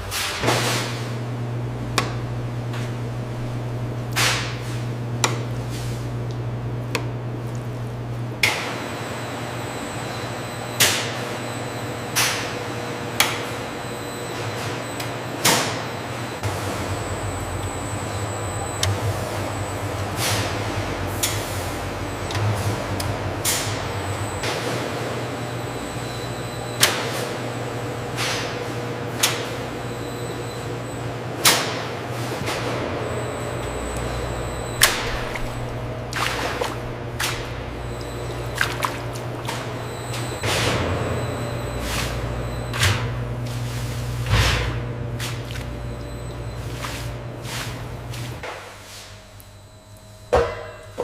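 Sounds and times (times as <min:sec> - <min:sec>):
factory machinery hum: 0:00.0 - 0:51.0
faint high whine: 0:33.0 - 0:36.8.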